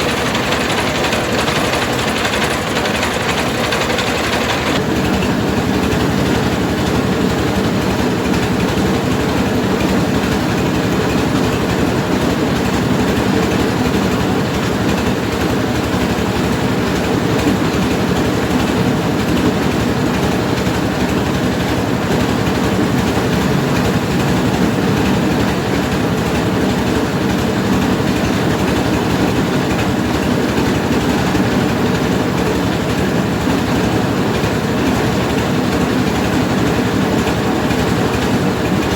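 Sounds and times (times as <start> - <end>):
rice milling machine running: 0.0 - 38.9.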